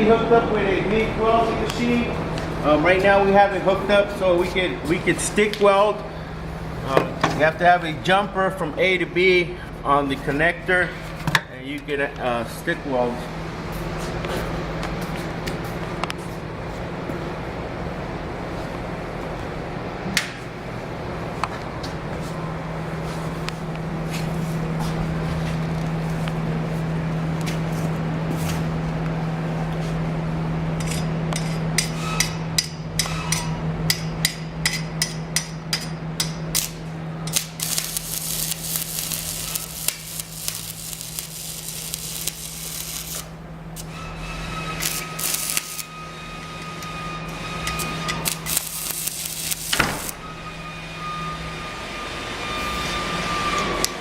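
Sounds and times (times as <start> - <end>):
welding power source humming: 22.4 - 29.4, 35.5 - 54.0
crackling sizzling welding arc: 36.4 - 45.9, 47.6 - 50.3
electrode striking cracks: 36.6 - 43.9, 44.8 - 45.9, 48.2 - 50.2.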